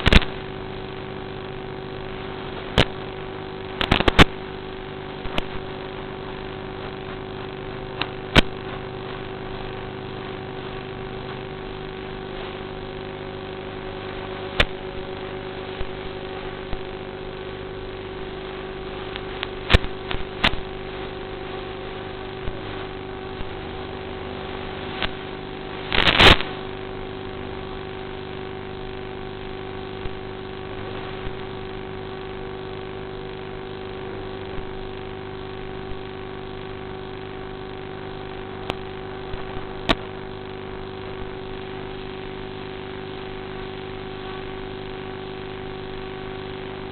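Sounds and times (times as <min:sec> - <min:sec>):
loud crackling burst: 0:00.0 - 0:46.9
steady tonal hum: 0:00.0 - 0:46.9
sharp clicks: 0:03.8 - 0:04.4, 0:08.0 - 0:08.8.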